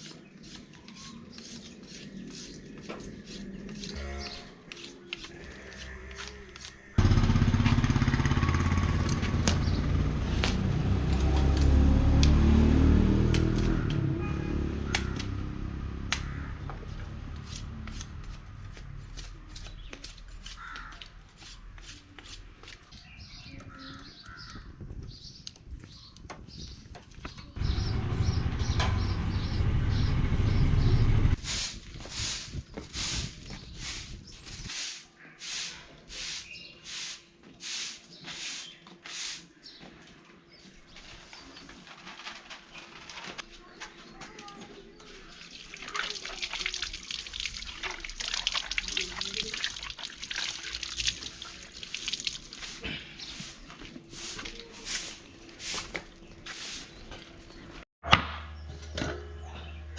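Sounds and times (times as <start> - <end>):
crow cawing: 16.1 - 16.7, 20.6 - 21.1, 23.7 - 24.7
loud low rumble: 27.6 - 31.4.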